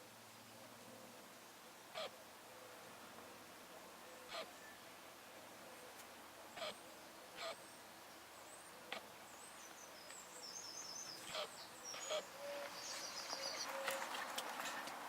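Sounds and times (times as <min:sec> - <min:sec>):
high chirping birdsong: 0:07.4 - 0:14.8.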